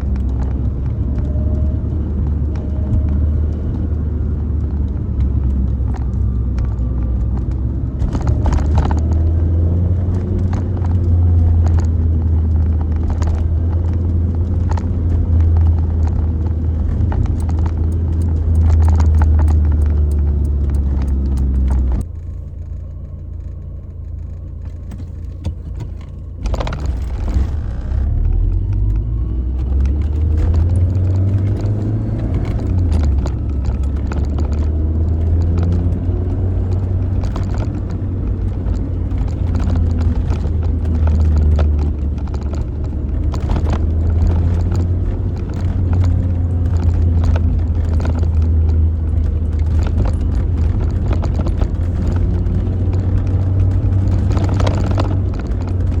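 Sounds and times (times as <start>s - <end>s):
car engine running: 0.0s - 56.0s.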